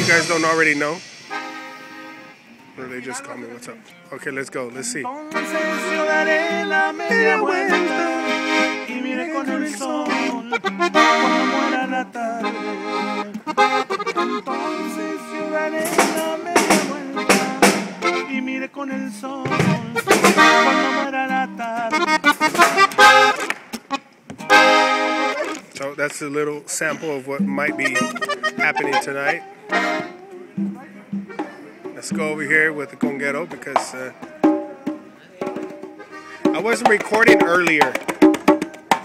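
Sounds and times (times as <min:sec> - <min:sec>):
drum hits: 0:00.0 - 0:02.6, 0:15.8 - 0:18.2, 0:19.4 - 0:20.7, 0:22.4 - 0:24.8, 0:30.6 - 0:39.0
button accordion melody: 0:00.0 - 0:03.8, 0:05.0 - 0:25.8, 0:26.9 - 0:32.8, 0:33.7 - 0:39.0
live band playing: 0:00.0 - 0:26.1, 0:26.8 - 0:39.0.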